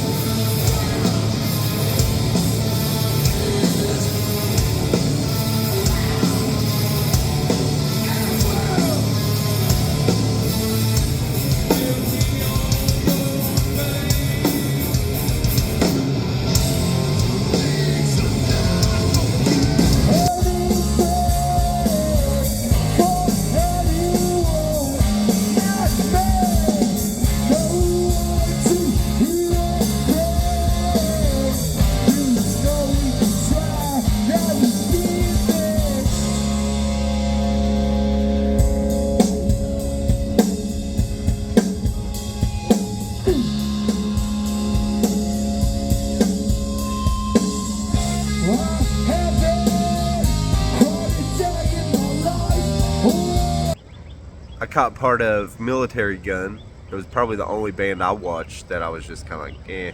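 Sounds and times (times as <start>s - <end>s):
distorted guitars: 0.0s - 53.8s
drums: 0.0s - 56.0s
person singing: 3.0s - 4.8s, 7.8s - 9.7s, 11.5s - 15.0s, 17.2s - 36.5s, 47.9s - 53.8s.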